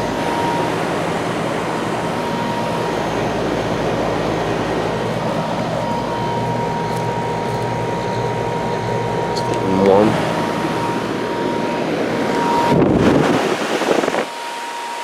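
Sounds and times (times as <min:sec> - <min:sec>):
low compressor hum: 0:00.0 - 0:13.5
heat pump fan rush: 0:00.0 - 0:15.0.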